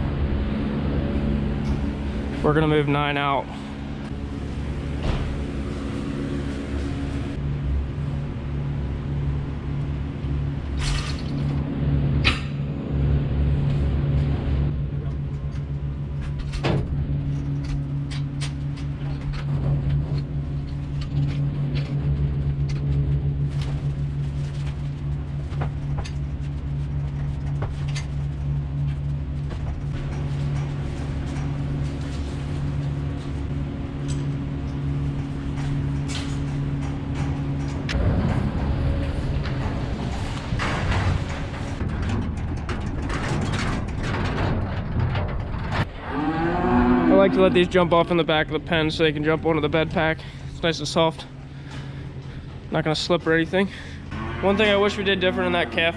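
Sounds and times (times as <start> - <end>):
engine idling: 0.0 - 46.0
knocks and clanks: 1.5 - 7.4, 14.7 - 46.9.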